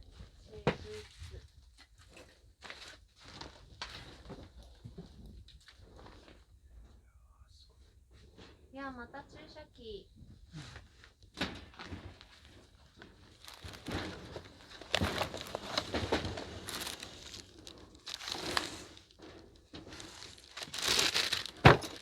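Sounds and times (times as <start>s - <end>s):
crunching and crinkling of debris: 0.8s - 6.4s, 11.3s - 22.0s.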